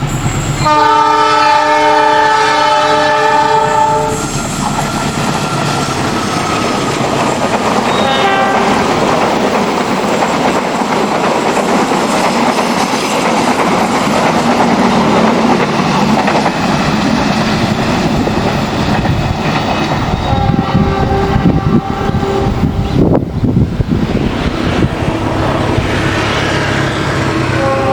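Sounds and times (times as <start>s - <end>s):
train wheels rumbling and clattering: 0.0s - 27.9s
locomotive horn blast: 0.1s - 6.9s, 7.8s - 9.0s, 20.2s - 23.3s, 25.8s - 27.9s.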